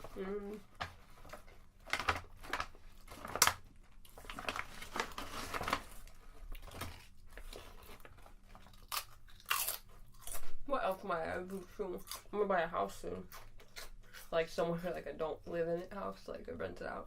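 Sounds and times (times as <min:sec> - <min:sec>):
plastic chip bag rustling: 0:00.0 - 0:10.6.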